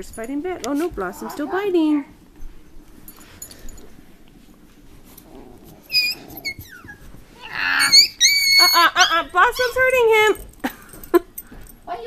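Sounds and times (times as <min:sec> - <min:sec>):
puppy yelping and whining: 0:05.4 - 0:09.8.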